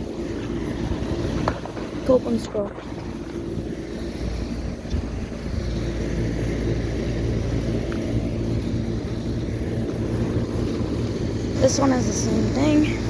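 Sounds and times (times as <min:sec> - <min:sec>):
low hums: 0:00.0 - 0:13.0
low machinery rumble: 0:00.0 - 0:13.0
wind noise on microphone: 0:00.0 - 0:13.0.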